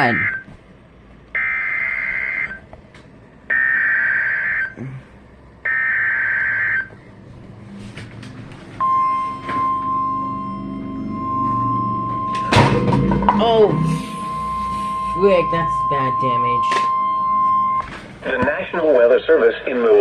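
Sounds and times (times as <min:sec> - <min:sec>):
buzzing digital data tones: 0:08.8 - 0:17.9
single-pitch warning alarm tone: 0:08.8 - 0:17.9.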